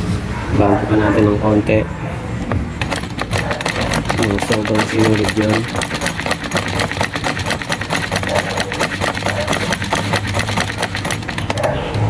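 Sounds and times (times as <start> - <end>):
sewing machine stitching: 2.7 - 12.0.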